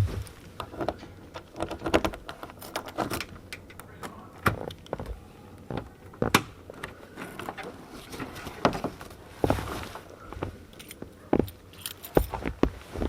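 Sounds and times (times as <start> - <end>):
metallic clinks and jangling: 11.7 - 12.4.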